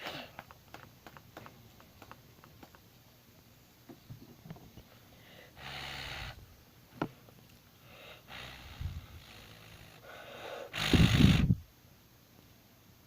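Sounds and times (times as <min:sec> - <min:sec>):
fidget spinner clicks and taps: 0:00.3 - 0:02.8
short breathy burst: 0:07.8 - 0:11.6.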